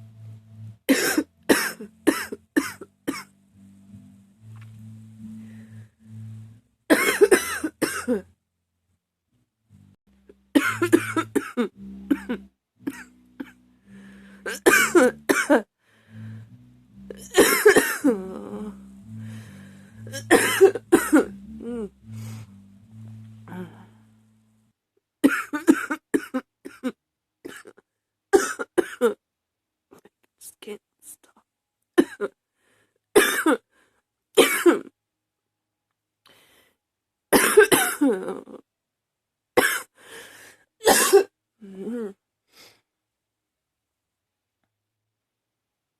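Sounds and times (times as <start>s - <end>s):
woman coughing: 0.9s - 3.3s, 6.9s - 8.2s, 10.6s - 13.5s, 14.5s - 15.7s, 17.2s - 18.4s, 20.1s - 21.3s, 25.2s - 27.8s, 28.4s - 29.2s, 32.0s - 32.3s, 33.2s - 33.6s, 34.4s - 34.9s, 37.4s - 38.5s, 39.6s - 39.9s, 40.8s - 41.3s.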